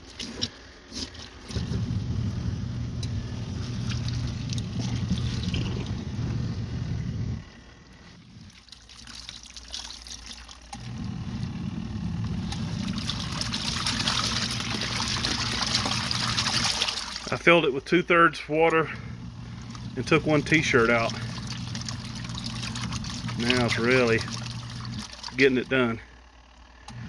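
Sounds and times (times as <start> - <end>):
water sloshing: 0.0 - 2.0, 3.2 - 6.6, 7.8 - 11.5, 12.2 - 17.6, 18.7 - 25.6
washing machine motor humming: 0.0 - 27.0.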